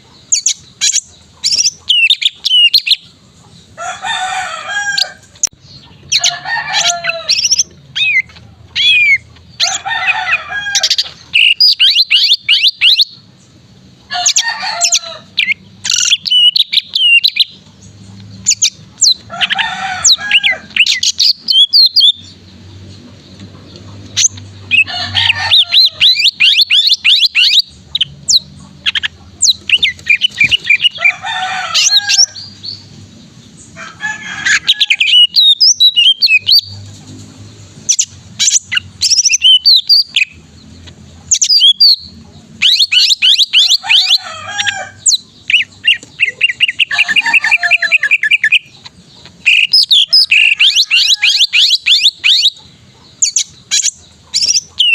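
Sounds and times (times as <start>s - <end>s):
bird singing sweeping notes: 10.7s - 13.6s, 14.2s - 19.2s, 23.3s - 33.7s, 37.8s - 40.4s, 41.3s - 52.6s.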